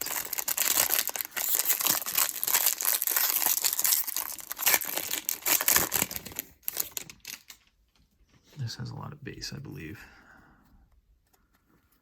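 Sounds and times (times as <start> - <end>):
foil wrapper crinkling and tearing: 0.0 - 7.8.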